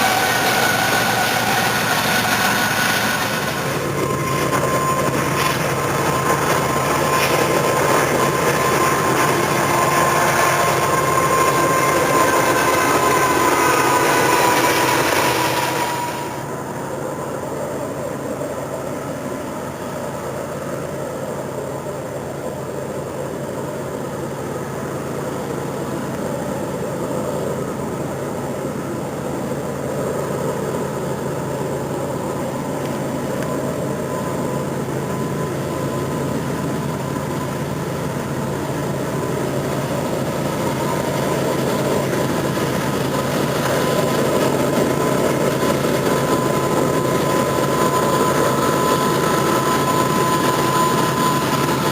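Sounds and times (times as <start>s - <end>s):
high squeal: 0.0s - 20.1s, 29.4s - 51.9s
low hum: 0.0s - 22.5s
train rumbling past: 0.0s - 51.9s.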